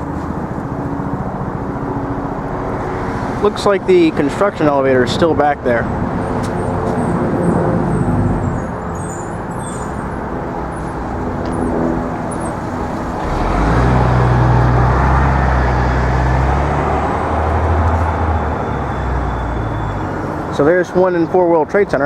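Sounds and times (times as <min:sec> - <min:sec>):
heavy vehicle engine running: 0:00.0 - 0:20.6
road traffic noise: 0:00.0 - 0:22.0.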